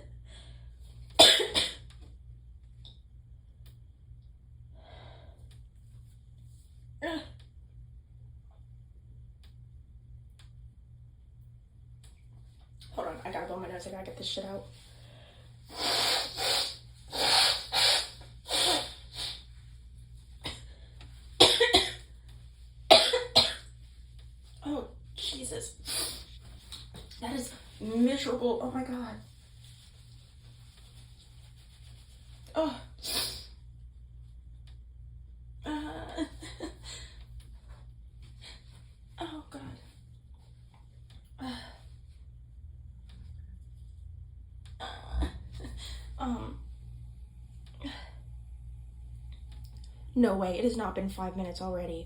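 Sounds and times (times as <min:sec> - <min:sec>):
woman coughing sharply: 0:01.2 - 0:01.8, 0:21.4 - 0:22.1, 0:22.9 - 0:23.7
faint breath: 0:04.7 - 0:05.5
person blowing nose: 0:15.7 - 0:19.5, 0:25.9 - 0:26.4, 0:33.0 - 0:33.5.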